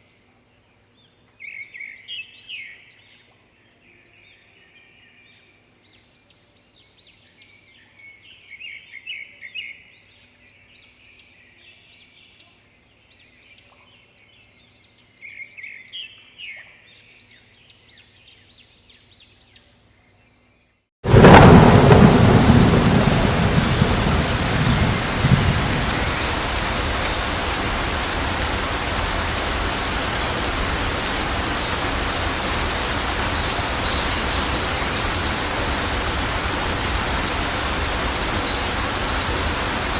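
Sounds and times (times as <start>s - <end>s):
rain downpour: 21.0s - 39.9s
thunder crack and rumble: 21.0s - 39.9s
birds chirping faintly: 21.1s - 39.9s.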